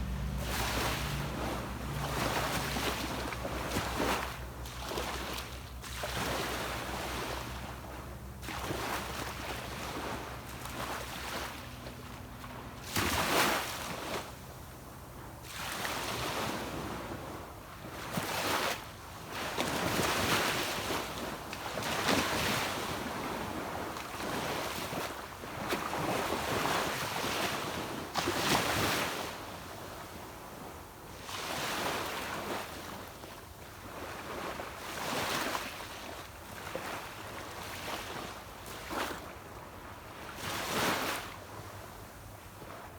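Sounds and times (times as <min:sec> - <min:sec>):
distant boat engine humming: 0:00.0 - 0:15.4
sea waves breaking on a beach: 0:00.0 - 0:42.9.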